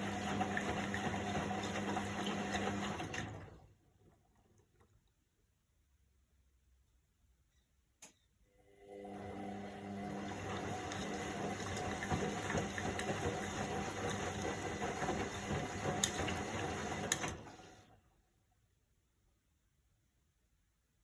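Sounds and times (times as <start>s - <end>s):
washing machine sloshing: 0.0s - 3.8s, 10.0s - 17.8s.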